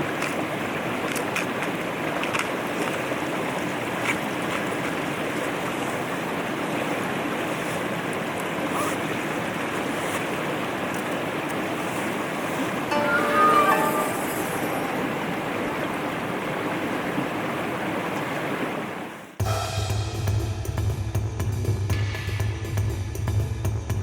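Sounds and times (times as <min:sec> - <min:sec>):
mountain stream rushing: 0:00.0 - 0:19.4.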